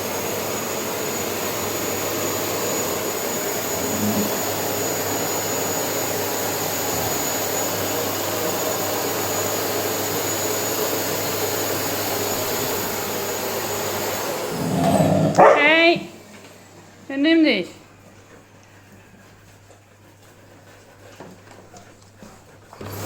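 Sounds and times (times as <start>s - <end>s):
vacuum cleaner running: 0.0s - 17.1s, 22.7s - 23.0s.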